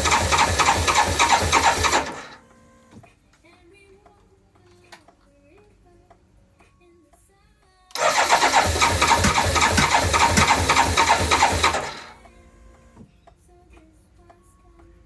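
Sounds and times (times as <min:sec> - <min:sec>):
motorcycle starter motor cranking: 0:00.0 - 0:03.1, 0:08.0 - 0:13.1.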